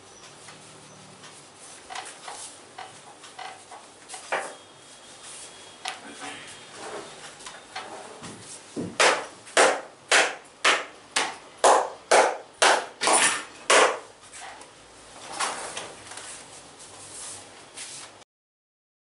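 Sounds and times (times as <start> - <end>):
soft noisy rubbing sound: 0.2 - 8.8, 14.1 - 18.2
hands slapping body: 8.9 - 14.1.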